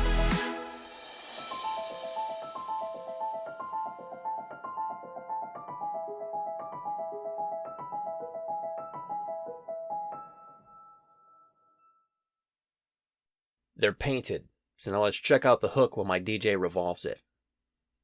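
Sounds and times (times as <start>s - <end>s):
bright keyboard melody: 0.0s - 11.6s.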